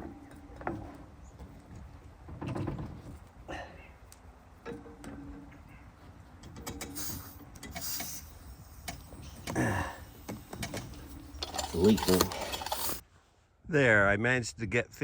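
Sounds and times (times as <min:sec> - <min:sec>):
air hissing: 0:06.7 - 0:13.0.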